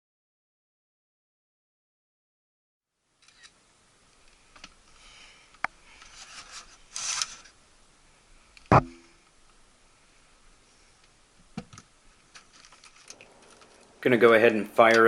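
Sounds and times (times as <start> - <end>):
soft rustling and rubbing: 5.8 - 7.6.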